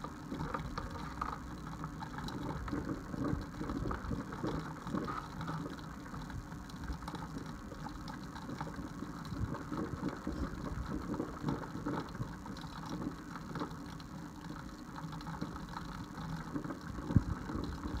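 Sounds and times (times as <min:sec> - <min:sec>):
coffee maker gurgling and sputtering: 0:00.0 - 0:18.0.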